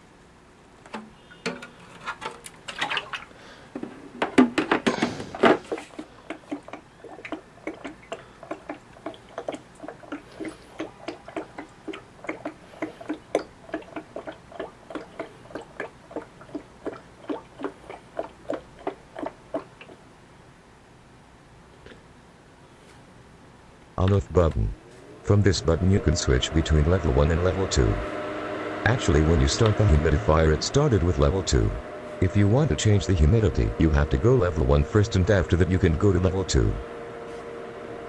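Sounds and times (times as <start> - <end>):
tank clattering and splashing: 0.8 - 20.0
water tank glugging: 0.8 - 20.0, 24.0 - 28.2, 28.8 - 36.9.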